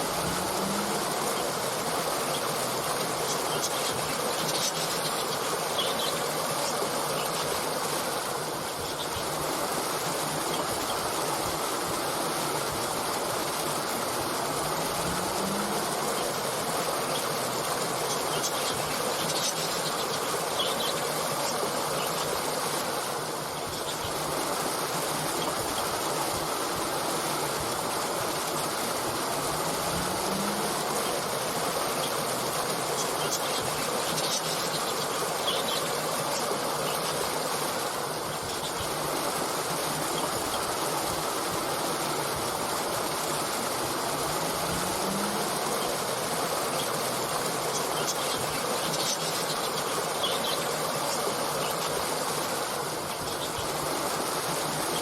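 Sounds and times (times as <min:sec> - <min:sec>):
stream water flowing: 0:00.0 - 0:55.0.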